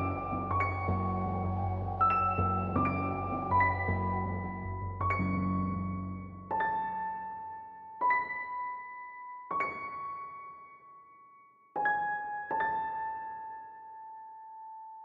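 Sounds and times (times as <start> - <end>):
slow piano notes: 0.0 - 11.0.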